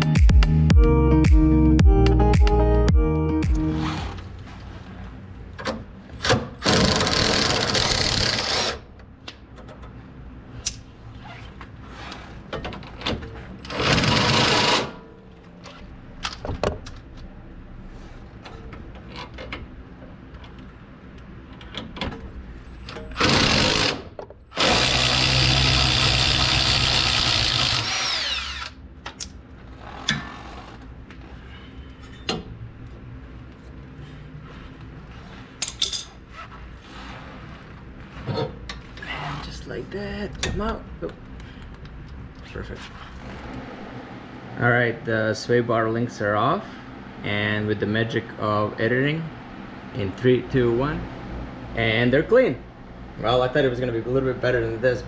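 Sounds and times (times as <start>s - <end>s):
power tool whirring: 6.6s - 8.8s, 23.1s - 28.8s
metal tools clinking: 35.6s - 36.2s.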